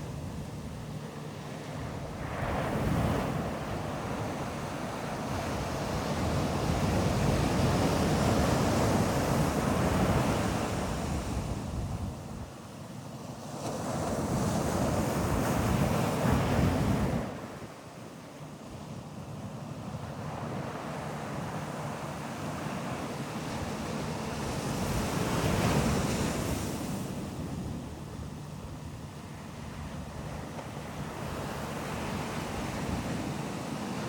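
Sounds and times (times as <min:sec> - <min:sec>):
ocean surf breaking on beach: 0:20.0 - 0:34.0.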